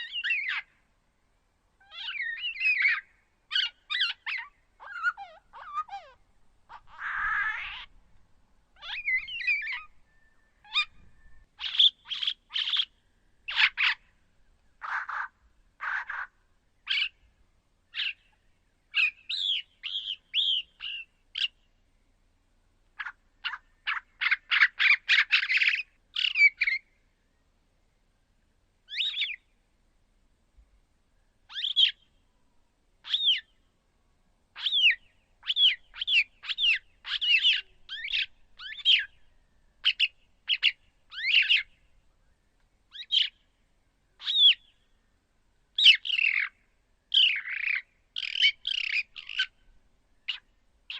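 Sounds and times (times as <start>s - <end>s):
harsh bird chirps and squawks: 0.0s - 0.8s, 1.8s - 7.9s, 8.8s - 14.1s, 14.8s - 17.2s, 17.9s - 21.6s, 23.0s - 26.9s, 28.9s - 29.4s, 31.5s - 32.0s, 33.0s - 33.5s, 34.6s - 41.8s, 42.9s - 43.4s, 44.2s - 44.8s, 45.8s - 49.6s, 50.3s - 50.9s.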